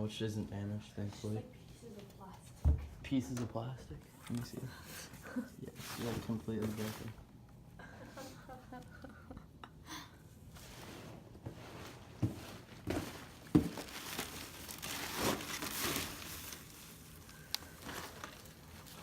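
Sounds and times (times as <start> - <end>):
packing material crinkling: 12.8 - 19.0.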